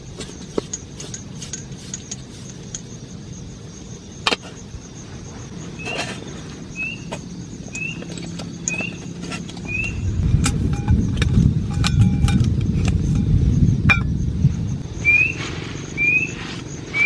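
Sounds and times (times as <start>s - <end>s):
high rising chirp: 14.6s - 17.0s.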